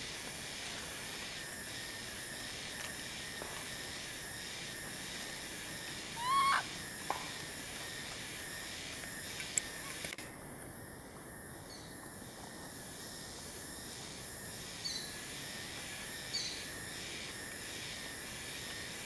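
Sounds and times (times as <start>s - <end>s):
steady outdoor hiss: 0.0s - 19.0s
high squeaking animal call: 6.2s - 6.7s.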